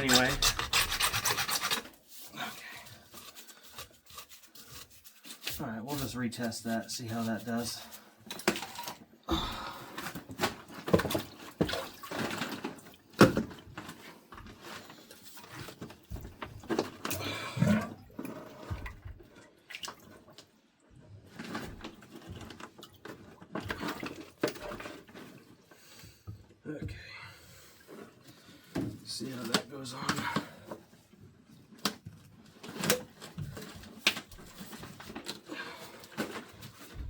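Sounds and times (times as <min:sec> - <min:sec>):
plastic pipe knocking and scraping: 0:10.3 - 0:14.8, 0:15.4 - 0:19.4.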